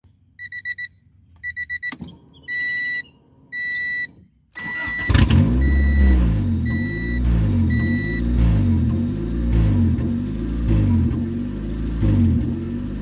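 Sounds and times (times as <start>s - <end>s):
dashboard warning chime beeping: 0.4s - 8.4s
car engine cranking and running: 4.6s - 13.0s.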